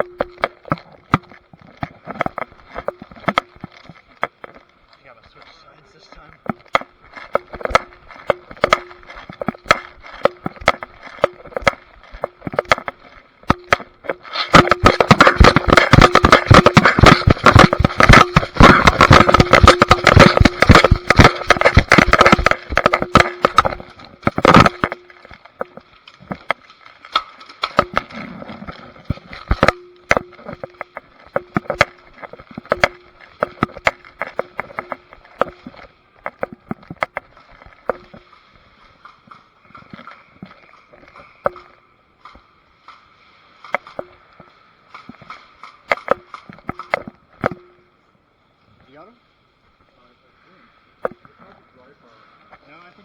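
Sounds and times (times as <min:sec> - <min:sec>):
rapid clicking and scraping: 0:00.0 - 0:47.6
sharp knock: 0:13.5 - 0:26.6.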